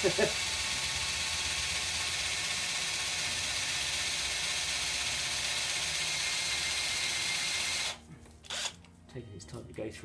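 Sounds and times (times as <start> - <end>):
cordless drill boring into metal: 0.0 - 8.8.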